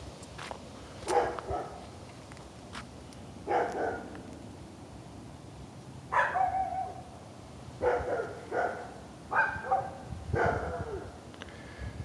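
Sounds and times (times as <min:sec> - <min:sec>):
dogs barking: 0:01.0 - 0:01.8, 0:03.5 - 0:04.1, 0:06.1 - 0:07.0, 0:07.8 - 0:11.1.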